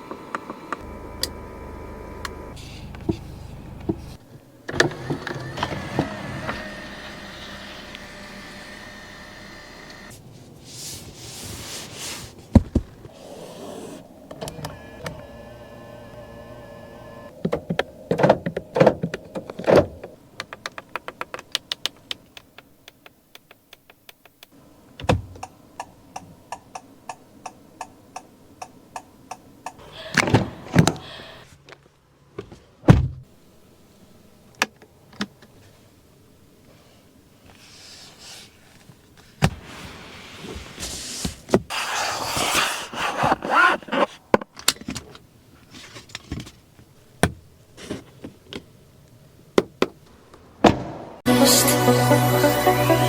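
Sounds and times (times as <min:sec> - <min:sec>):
electric motor whine: 0:00.0 - 0:10.1, 0:14.3 - 0:17.3.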